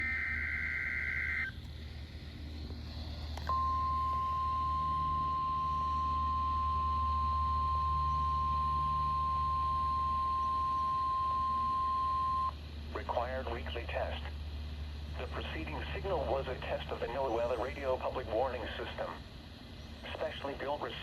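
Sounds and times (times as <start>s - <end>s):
steady alarm tone: 0.0s - 1.5s, 3.5s - 12.5s
radio hiss and hum: 0.0s - 21.0s.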